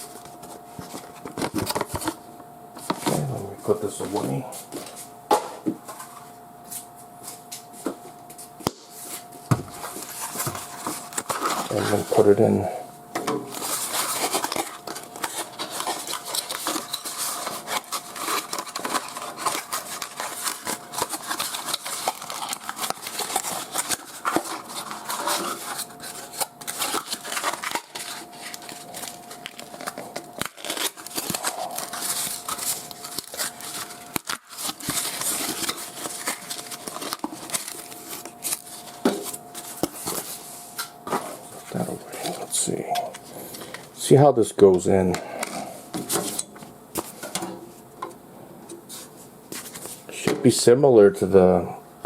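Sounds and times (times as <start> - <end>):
plastic rustling: 8.9 - 12.6, 13.4 - 47.9.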